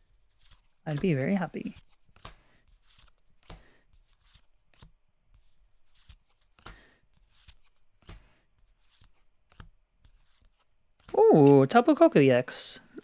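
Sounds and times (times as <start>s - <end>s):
cards swishing and clicking: 0.4s - 3.6s, 5.9s - 11.6s.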